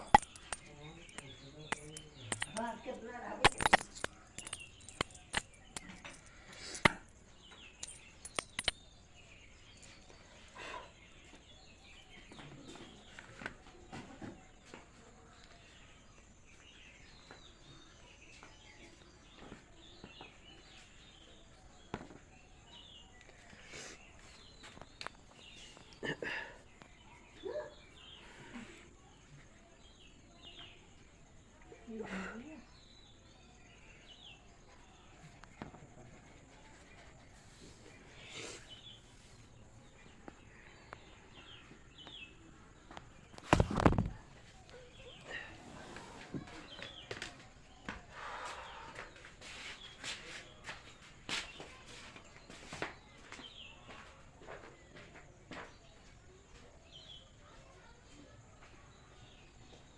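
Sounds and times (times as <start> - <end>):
faint birds chirping: 0.0 - 59.9.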